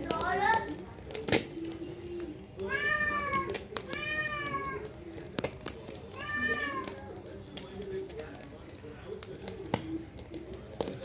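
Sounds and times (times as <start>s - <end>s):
cat meowing: 2.6s - 4.9s, 6.1s - 7.1s.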